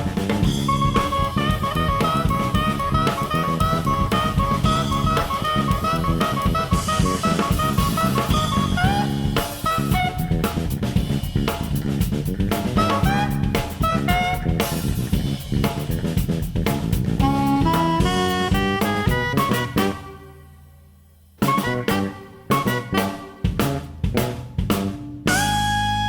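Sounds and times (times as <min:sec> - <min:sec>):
saxophone phrases: 0:00.0 - 0:10.7, 0:12.6 - 0:15.0, 0:17.2 - 0:20.6, 0:21.4 - 0:23.7, 0:25.2 - 0:26.0
drum kit playing: 0:00.0 - 0:20.6, 0:21.2 - 0:26.0
electric bass: 0:00.0 - 0:26.0.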